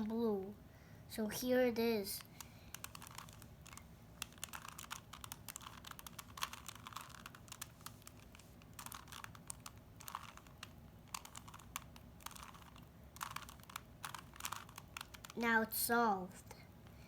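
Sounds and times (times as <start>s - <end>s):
puzzle cube layers clicking: 2.2s - 15.6s.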